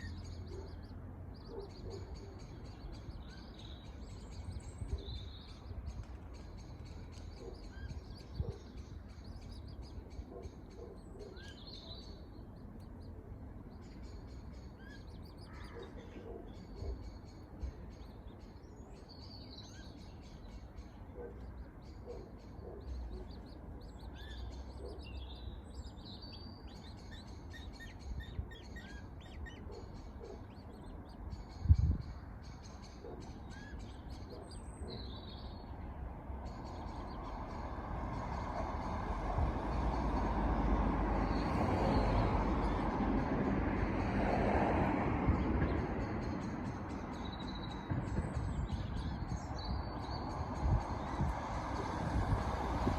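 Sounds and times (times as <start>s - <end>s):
birds chirping: 0.0s - 52.9s
broad rushing noise: 37.4s - 45.6s.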